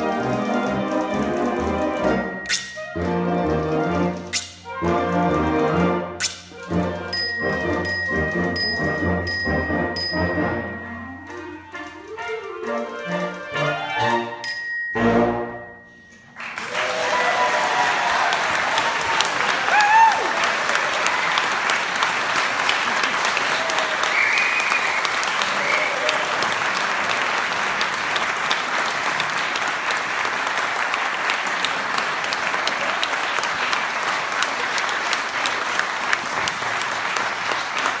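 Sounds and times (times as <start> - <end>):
audience applauding: 16.3 - 38.0
people cheering: 16.4 - 38.0.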